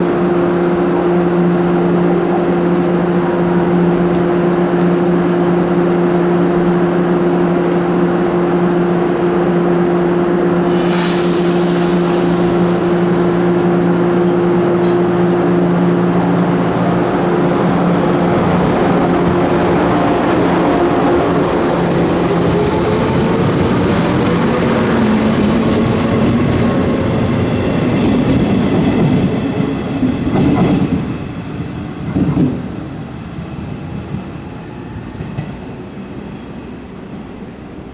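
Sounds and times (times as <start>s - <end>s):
train electrical hum: 0.0s - 37.9s
train wheel noise: 10.2s - 37.6s
air hiss: 10.6s - 15.3s.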